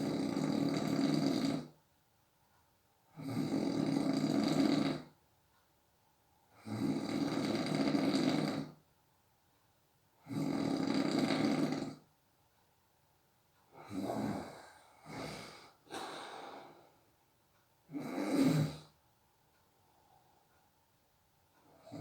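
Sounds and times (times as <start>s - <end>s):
person snoring: 0.0s - 1.8s, 3.2s - 5.1s, 6.6s - 8.8s, 10.2s - 12.0s, 13.7s - 17.0s, 17.9s - 18.9s, 21.7s - 22.0s
short breaths: 14.0s - 17.1s.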